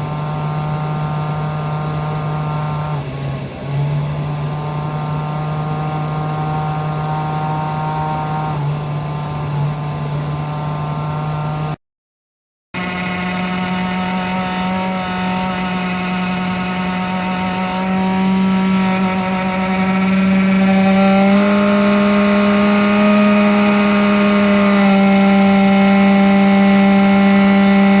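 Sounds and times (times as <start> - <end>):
heater humming: 0.0 - 11.7.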